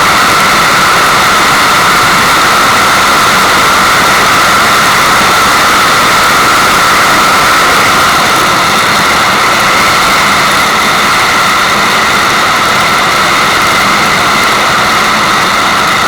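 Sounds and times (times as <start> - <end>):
running water rushing: 0.0 - 16.0.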